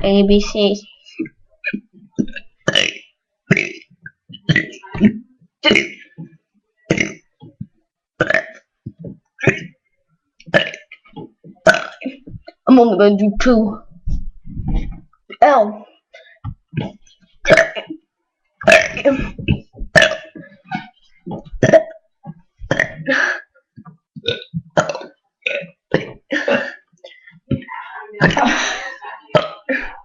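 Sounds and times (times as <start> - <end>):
person burping: 1.2 - 7.5, 8.2 - 9.8, 10.4 - 12.4, 16.8 - 18.0, 18.6 - 22.0, 22.7 - 23.5, 24.2 - 30.0.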